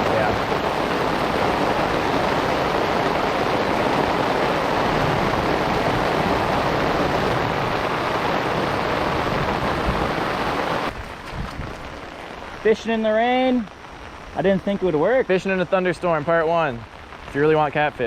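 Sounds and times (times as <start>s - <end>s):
heavy rain pouring: 0.0s - 18.0s.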